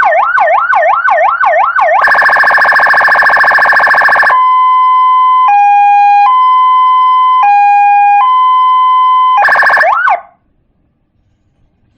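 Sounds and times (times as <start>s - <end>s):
electronic two-tone siren: 0.0s - 10.4s.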